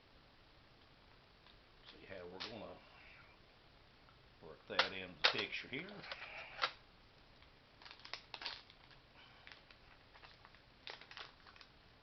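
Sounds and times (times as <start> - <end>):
foil packet crinkling: 7.8 - 11.8.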